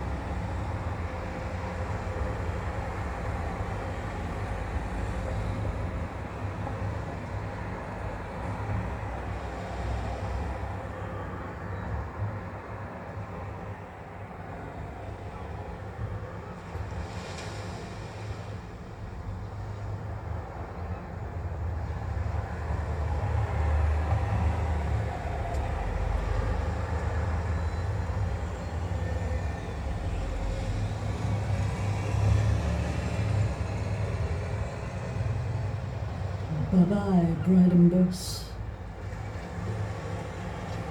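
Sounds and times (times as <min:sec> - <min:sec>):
bus engine rumble passing: 0:00.0 - 0:40.9
street noise: 0:00.0 - 0:40.9.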